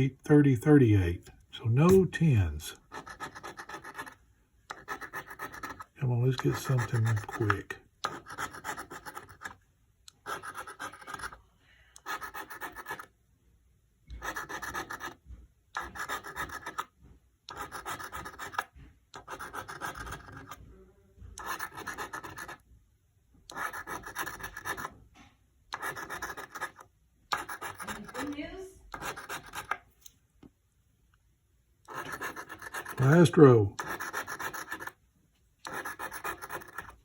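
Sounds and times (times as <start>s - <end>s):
lottery ticket being scratched: 1.6s - 9.6s, 10.2s - 11.4s, 12.0s - 13.1s, 14.2s - 15.2s, 15.8s - 16.9s, 17.5s - 20.6s, 21.4s - 22.6s, 23.5s - 24.9s, 25.7s - 29.8s, 31.9s - 35.0s, 35.6s - 37.0s.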